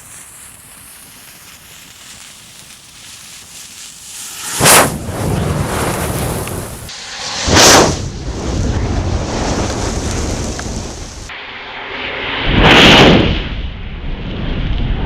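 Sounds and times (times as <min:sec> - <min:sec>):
whooshing flare-ups: 0:00.0 - 0:11.3
rushing fire noise: 0:00.0 - 0:11.4.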